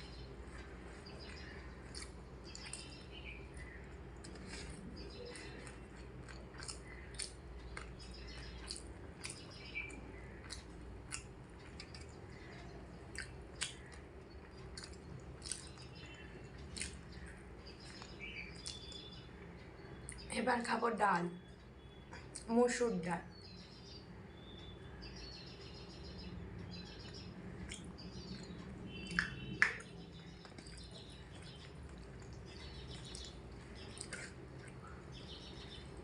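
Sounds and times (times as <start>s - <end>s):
low steady hum: 0.0s - 36.0s
person chewing: 0.2s - 12.3s, 12.9s - 19.0s, 27.6s - 35.1s.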